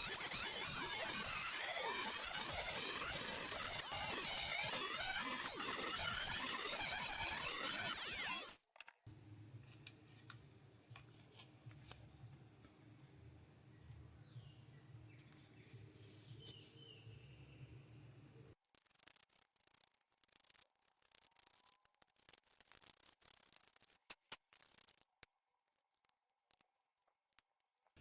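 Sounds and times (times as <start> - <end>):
rotary tool grinding plastic: 0.0 - 8.6
faint low hum: 9.1 - 18.6.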